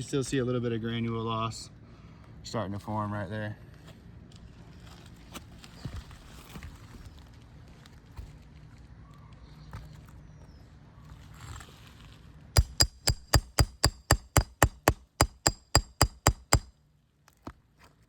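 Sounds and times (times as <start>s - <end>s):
hammer striking metal nail puller: 12.6s - 16.7s.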